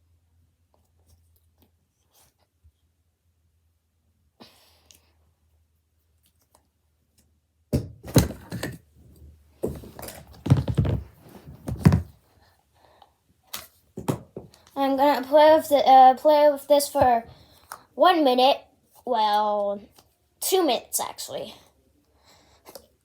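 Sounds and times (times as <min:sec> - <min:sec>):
thumps and rustling handling noise: 0:07.8 - 0:12.2, 0:13.9 - 0:14.8.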